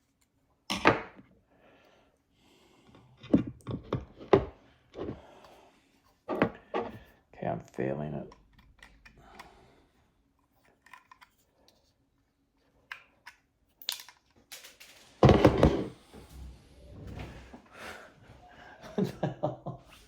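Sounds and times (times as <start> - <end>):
thunk: 15.2 - 15.9.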